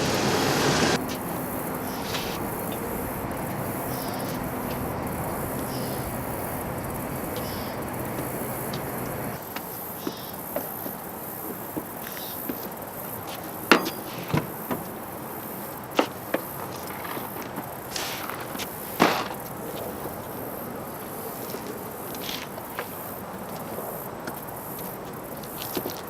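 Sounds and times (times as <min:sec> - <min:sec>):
car engine running: 0:00.0 - 0:09.4
insects buzzing: 0:00.0 - 0:26.0.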